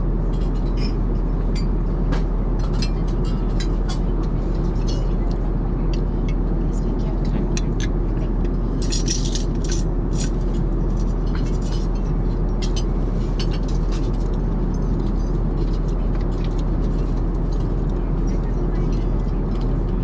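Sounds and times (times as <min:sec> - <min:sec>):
airplane cabin rumble: 0:00.0 - 0:20.0
dishes and cutlery clinking: 0:08.8 - 0:10.4.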